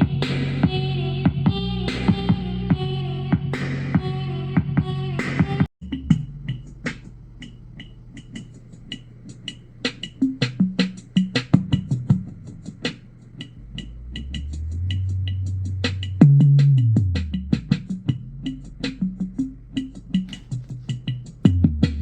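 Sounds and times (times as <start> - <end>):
deep bass tone: 0.0 - 8.3, 13.6 - 22.0
deep bass line: 0.0 - 9.2, 9.8 - 13.0, 13.6 - 22.0.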